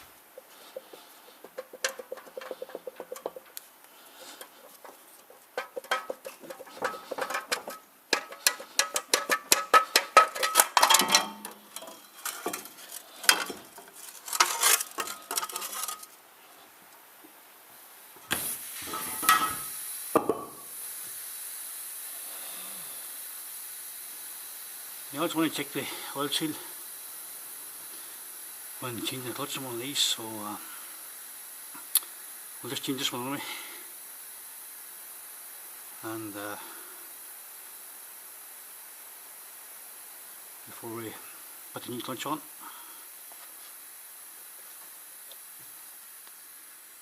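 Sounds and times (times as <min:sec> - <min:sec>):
hand tools clinking on metal: 0:04.2 - 0:16.1
spray or air blast hiss: 0:18.2 - 0:25.1.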